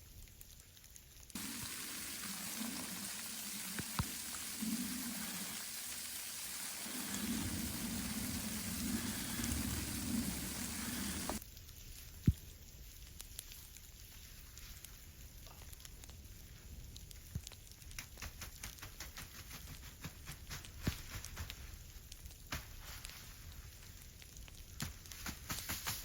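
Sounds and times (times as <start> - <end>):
steady rain: 1.3 - 11.9.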